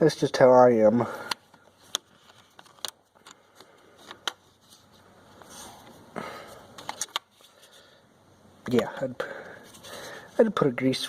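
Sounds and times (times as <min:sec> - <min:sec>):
handling clicks and rustles: 0:01.2 - 0:06.0.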